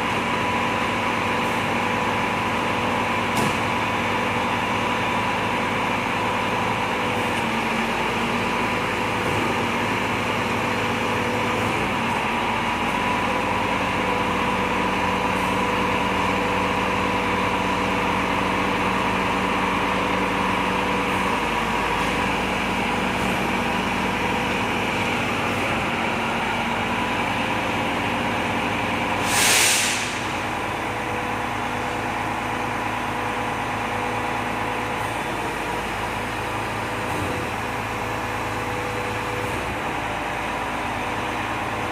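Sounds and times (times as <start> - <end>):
truck diesel engine idling: 0.0 - 41.9
hiss of released air: 29.2 - 30.4.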